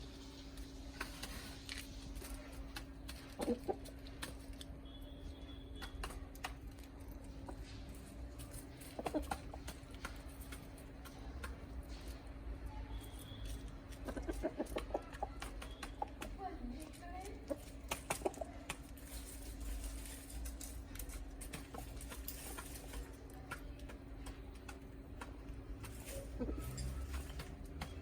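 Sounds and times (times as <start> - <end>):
chickens clucking: 2.3 - 4.4, 7.3 - 12.2, 13.8 - 19.1, 21.5 - 28.0.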